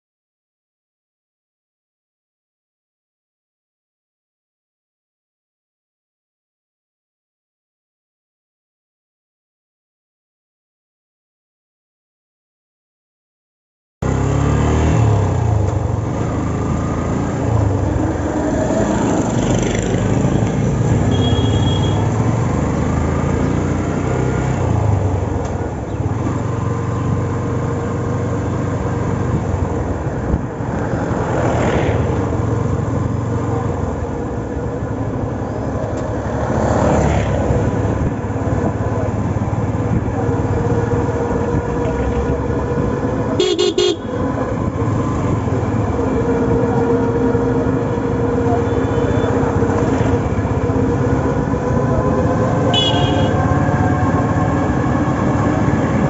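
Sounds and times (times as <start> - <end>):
vehicles passing: 14.0 - 56.0.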